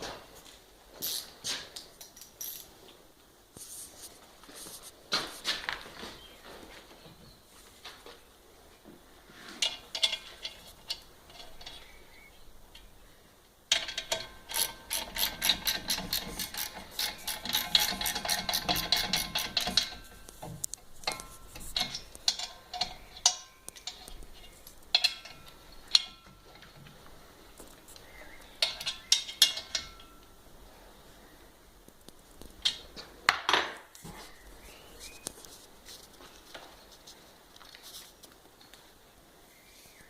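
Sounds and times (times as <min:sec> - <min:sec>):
handling clicks and knocks: 0:09.6 - 0:12.0, 0:13.7 - 0:28.0
chain mechanism ratcheting clicks: 0:13.7 - 0:20.2.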